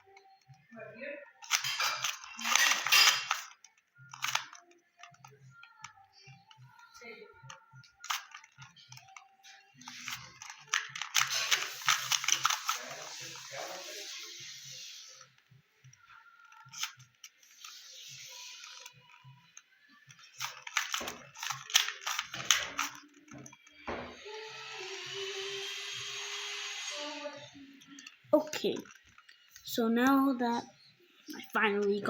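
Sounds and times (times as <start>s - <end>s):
puzzle cube layers clicking: 1.4s - 4.6s, 16.6s - 19.1s, 20.1s - 23.0s.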